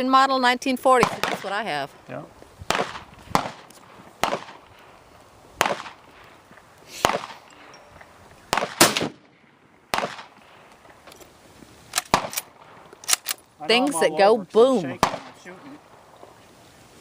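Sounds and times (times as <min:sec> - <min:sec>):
rifle shots with echo: 0:01.0 - 0:01.6, 0:02.7 - 0:04.8, 0:05.6 - 0:06.1, 0:07.0 - 0:07.5, 0:08.5 - 0:10.6, 0:12.0 - 0:12.8, 0:14.9 - 0:16.0.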